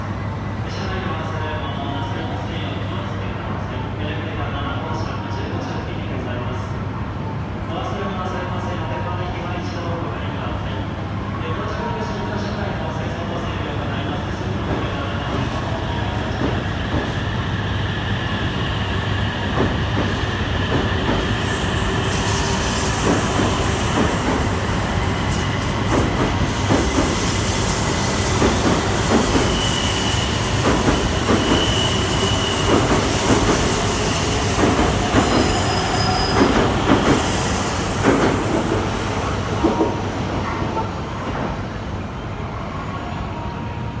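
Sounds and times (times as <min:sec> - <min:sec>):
train running noise: 0:11.8 - 0:42.4
high wheel squeals: 0:21.0 - 0:40.2.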